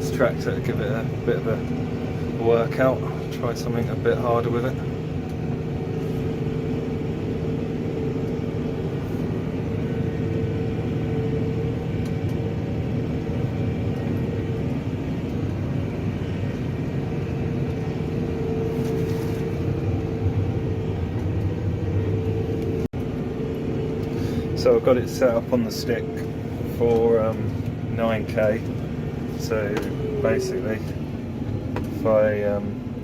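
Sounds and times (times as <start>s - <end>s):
tractor engine running under load: 0.0s - 33.0s.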